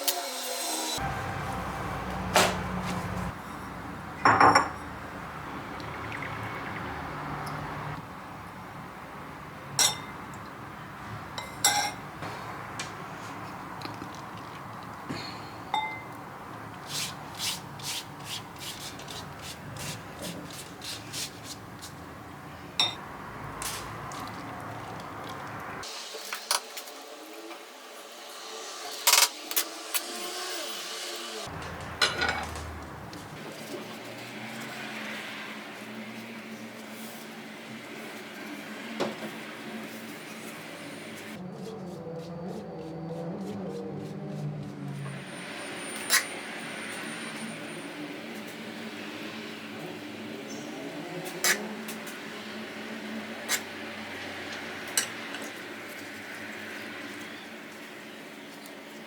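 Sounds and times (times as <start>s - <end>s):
utensils and dishes clinking: 2.4s - 5.0s, 9.7s - 10.3s, 11.4s - 12.1s, 15.7s - 16.2s, 22.8s - 23.0s, 31.5s - 32.8s, 53.5s - 56.1s
rubbing and scraping: 16.8s - 22.1s.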